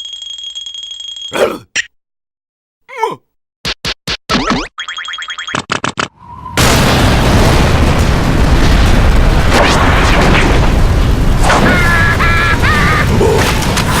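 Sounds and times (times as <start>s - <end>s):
loud rumbling blast: 6.3s - 13.8s.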